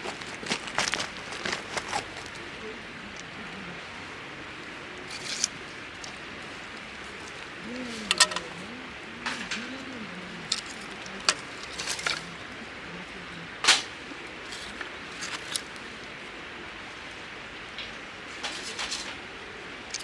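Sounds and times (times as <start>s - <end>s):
steady background hiss: 0.0s - 20.0s
clicks and clinks of small objects: 8.1s - 8.5s.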